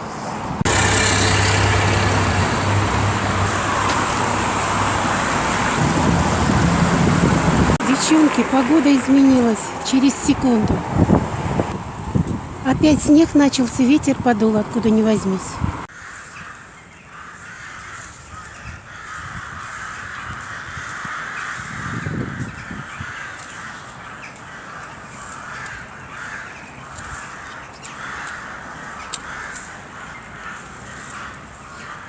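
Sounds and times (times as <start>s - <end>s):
crows cawing: 15.9s - 32.0s.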